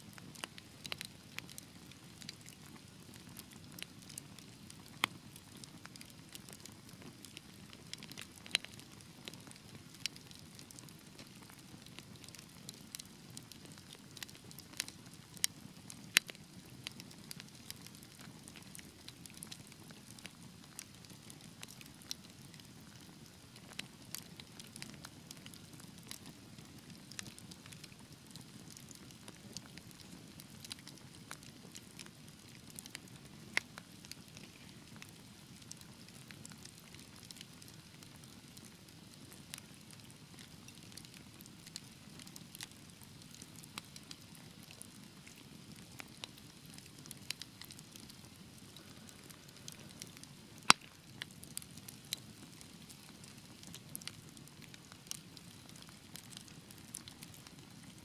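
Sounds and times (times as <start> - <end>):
wood fire crackling and popping: 0.1 - 58.0.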